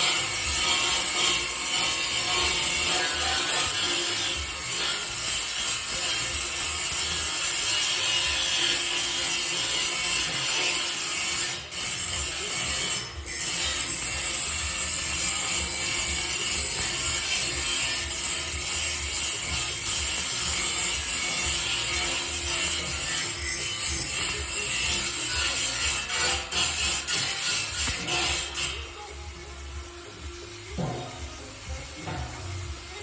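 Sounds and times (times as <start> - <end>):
workshop tool working material: 0.0 - 33.0.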